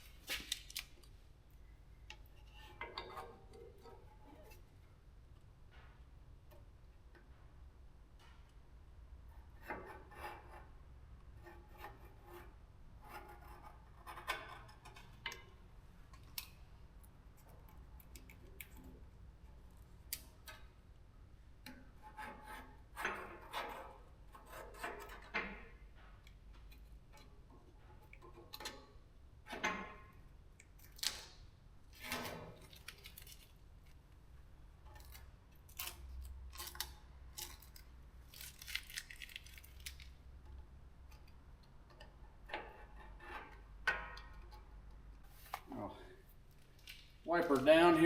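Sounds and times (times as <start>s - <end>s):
hand rubbing and scraping: 0.0s - 1.2s, 45.2s - 45.9s.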